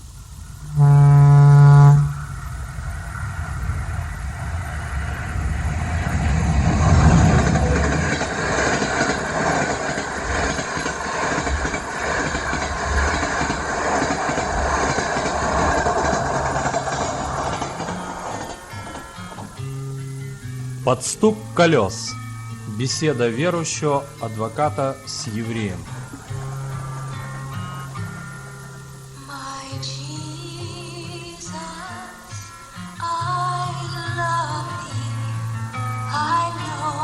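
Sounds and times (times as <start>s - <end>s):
moving train running noise: 0.0s - 37.0s
train horn: 0.6s - 2.4s.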